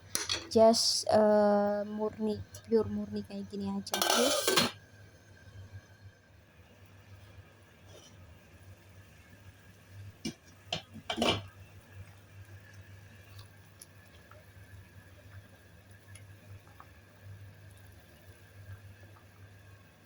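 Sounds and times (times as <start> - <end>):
low steady hum: 0.0 - 20.0
cookware clinking: 3.9 - 4.8, 10.8 - 11.4
pot lid clatter: 3.9 - 4.8, 10.8 - 11.5.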